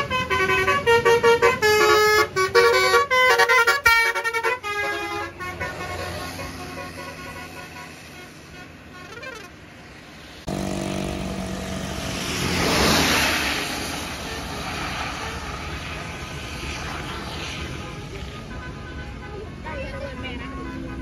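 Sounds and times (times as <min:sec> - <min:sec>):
bus passing close by: 0:09.6 - 0:21.0.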